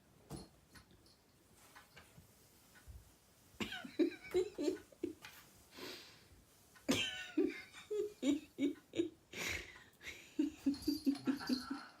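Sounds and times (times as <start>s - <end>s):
person laughing: 3.6s - 5.2s, 6.9s - 12.0s.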